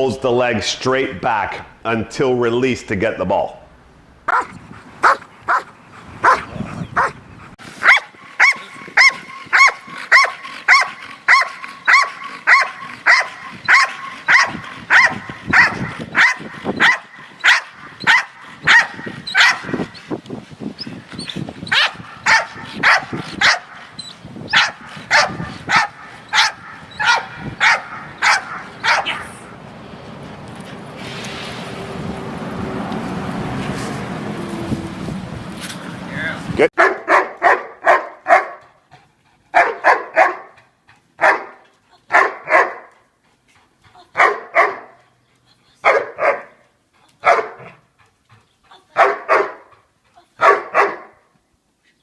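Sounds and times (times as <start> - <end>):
dog barking: 4.3 - 7.2, 7.8 - 19.9, 21.7 - 23.8, 24.5 - 29.2, 36.8 - 38.7, 39.5 - 40.6, 41.2 - 42.9, 44.1 - 45.0, 45.8 - 46.6, 47.2 - 47.8, 49.0 - 49.7, 50.4 - 51.2.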